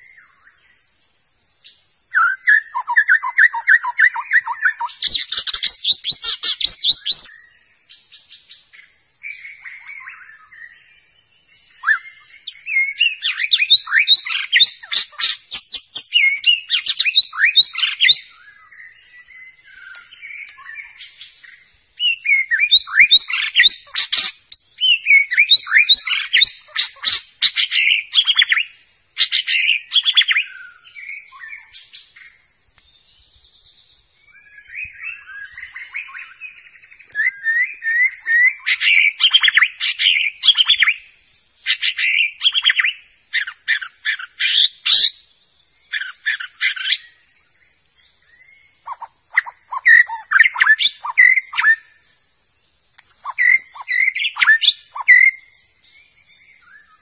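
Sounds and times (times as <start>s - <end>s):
bird singing whistles and chatter: 1.6s - 10.8s, 11.6s - 32.3s, 34.3s - 45.2s, 45.9s - 47.5s, 48.2s - 52.0s, 53.0s - 57.0s.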